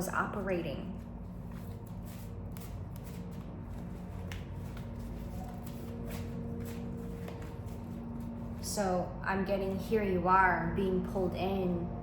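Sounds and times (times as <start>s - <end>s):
low hum: 0.0s - 12.0s
cards being shuffled: 1.3s - 8.4s.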